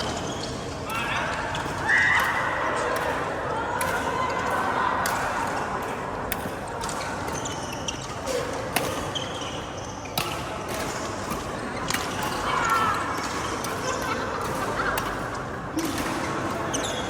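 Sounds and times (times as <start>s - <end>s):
shoes squeaking on court floor: 0.0s - 1.7s, 6.9s - 12.4s, 15.9s - 17.0s
racket hitting shuttlecock: 0.9s - 9.3s.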